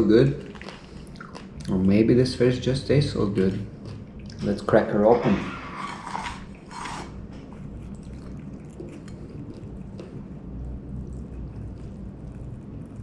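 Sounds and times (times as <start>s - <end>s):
fried fish crunching: 0.0s - 2.0s.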